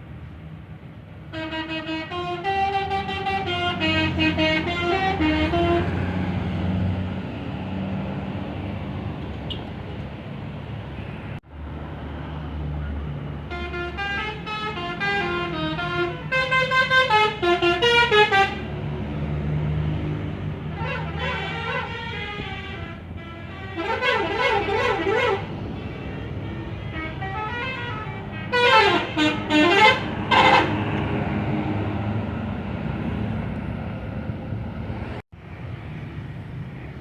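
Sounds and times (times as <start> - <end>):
bus engines rumbling: 0.0 - 37.0
bus multi-tone horn tunes: 1.3 - 6.8, 13.4 - 19.0, 20.6 - 32.1.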